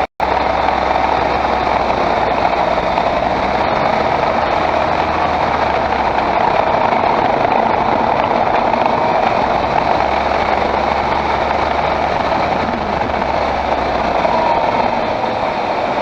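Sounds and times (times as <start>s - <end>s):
car engine running: 0.0s - 16.0s
road noise: 0.0s - 16.0s.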